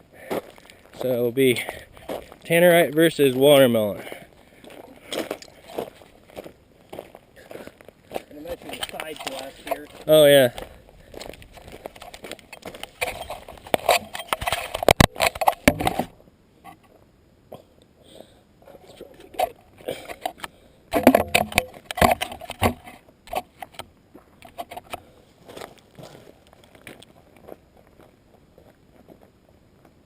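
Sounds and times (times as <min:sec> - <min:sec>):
handling clicks knocks and rustles: 0:08.5 - 0:10.5, 0:11.2 - 0:16.8, 0:19.2 - 0:25.0.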